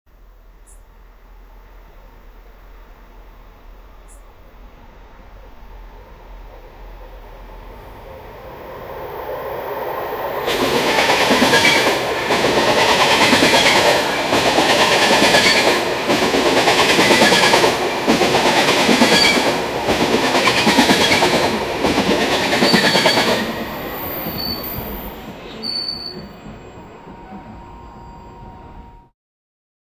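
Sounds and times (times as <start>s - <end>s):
train wheels rumbling on rail: 0.2s - 29.1s
metallic wheel squeal: 22.6s - 29.1s.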